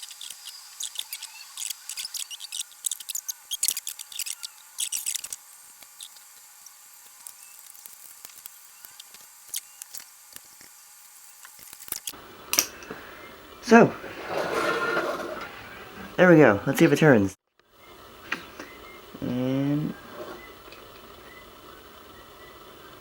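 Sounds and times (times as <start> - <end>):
small clicks and scrapes of tools: 0.0 - 13.0.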